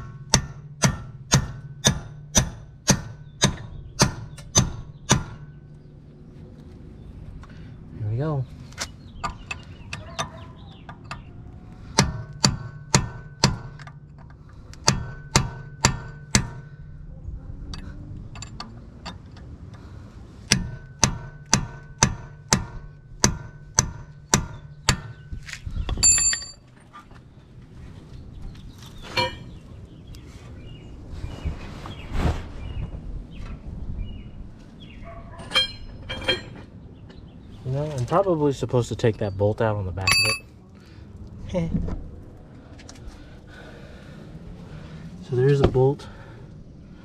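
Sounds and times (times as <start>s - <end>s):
hammer striking metal: 0.0s - 5.6s, 12.0s - 14.0s, 14.8s - 16.8s, 20.5s - 25.2s, 29.2s - 29.5s, 35.4s - 36.6s, 40.0s - 40.5s
loud metal clank: 35.4s - 36.7s.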